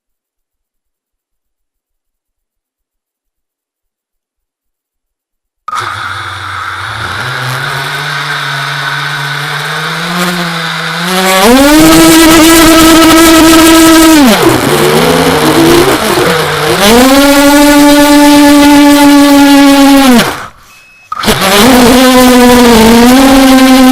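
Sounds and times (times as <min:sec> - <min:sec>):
drone motors whining: 0:05.7 - 0:23.9.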